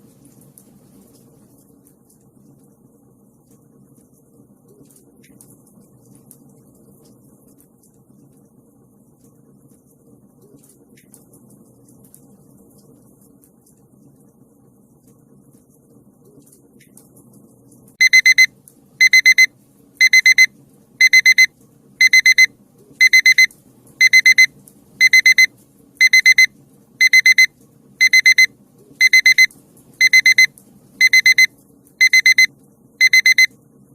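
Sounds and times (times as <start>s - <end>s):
alarm clock beeping: 18.0s - 33.5s.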